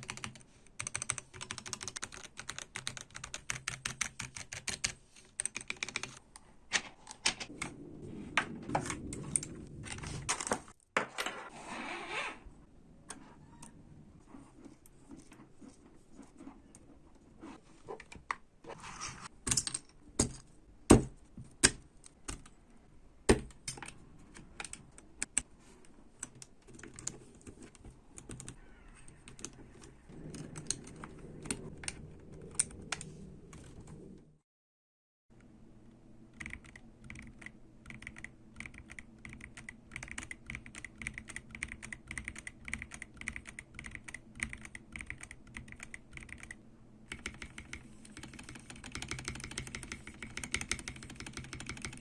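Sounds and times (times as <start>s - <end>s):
mechanical keyboard typing: 0.0s - 6.2s, 36.4s - 52.0s.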